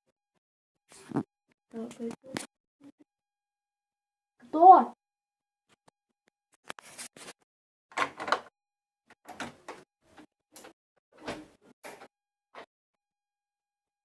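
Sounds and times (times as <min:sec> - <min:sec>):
door lock and handle rattling: 0:07.9 - 0:08.5.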